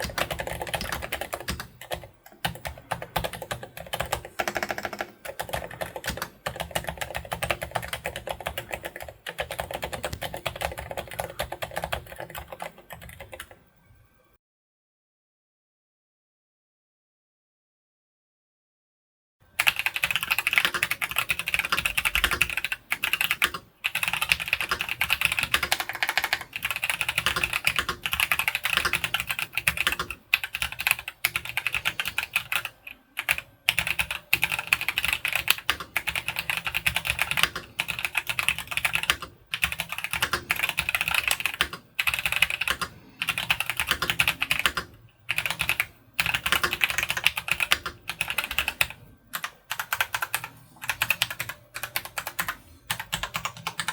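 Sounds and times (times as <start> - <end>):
fast mechanical keyboard typing: 0.0 - 13.6, 19.6 - 53.9.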